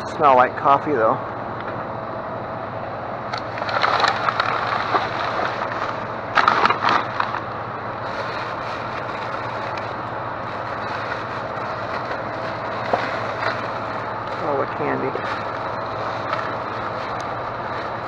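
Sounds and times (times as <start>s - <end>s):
low background hum: 0.0s - 18.0s
plastic bags rustling and crinkling: 3.4s - 7.4s, 8.0s - 18.0s.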